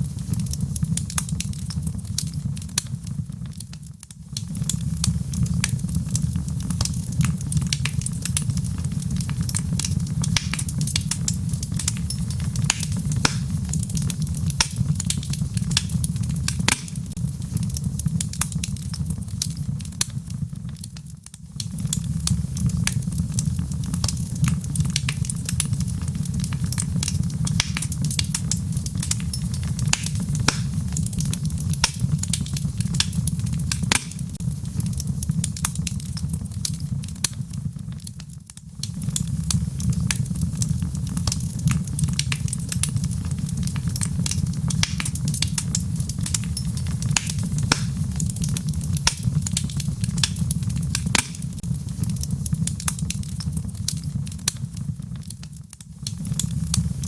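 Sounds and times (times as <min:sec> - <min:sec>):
logs crackling and popping: 0:00.0 - 0:57.0
low rumble of flames: 0:00.0 - 0:57.0.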